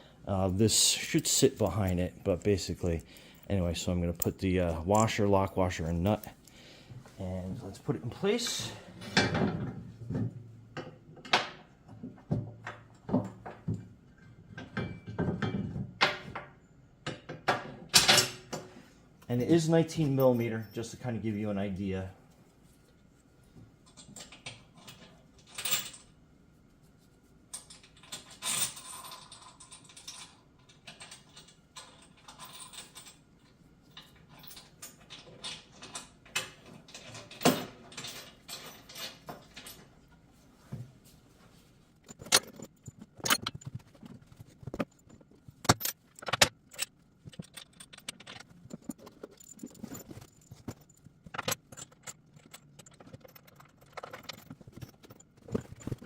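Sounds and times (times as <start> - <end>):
wrench clinking on metal bolts: 42.0 - 43.7, 44.8 - 56.0.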